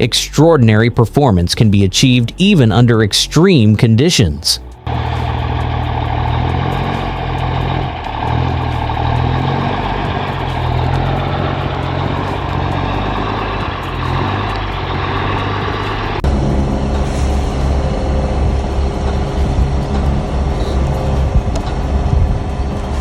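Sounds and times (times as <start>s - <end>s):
deeper engine running: 4.6s - 23.0s
heavy truck engine running: 4.6s - 23.0s.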